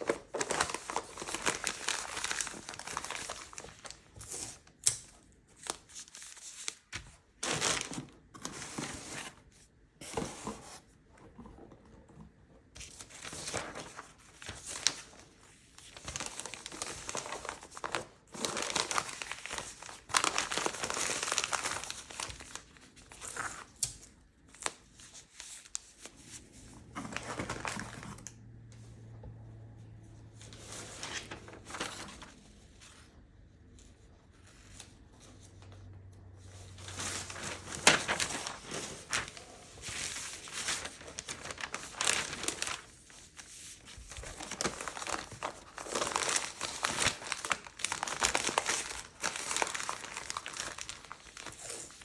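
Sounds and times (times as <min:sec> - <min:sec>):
packing material crinkling: 0:00.0 - 0:04.9, 0:05.6 - 0:09.4, 0:12.9 - 0:28.3, 0:30.5 - 0:32.4, 0:36.6 - 0:52.0.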